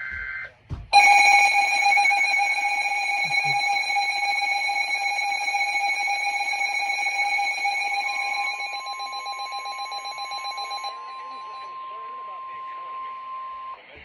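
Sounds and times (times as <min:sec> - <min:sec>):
steady electronic alert tone: 0:01.0 - 0:10.9.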